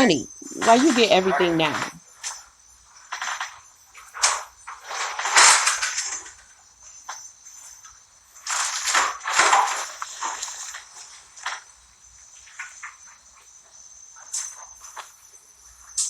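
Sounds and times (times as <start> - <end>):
crickets chirping: 0.0 - 16.0
loud crunching rustling: 0.3 - 13.6.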